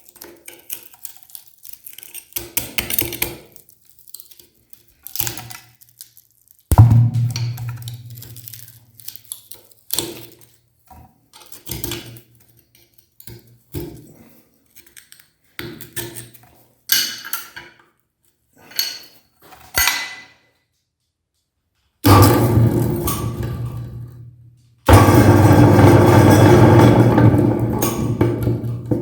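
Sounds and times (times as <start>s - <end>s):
hard candy clattering on metal and glass: 7.7s - 10.4s.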